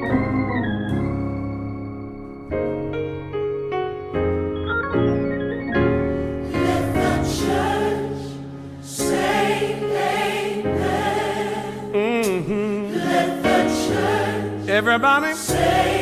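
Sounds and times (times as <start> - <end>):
organ and keyboard chords: 0.0 - 16.0
gospel choir singing: 6.4 - 16.0
lead voice singing melisma: 6.5 - 16.0.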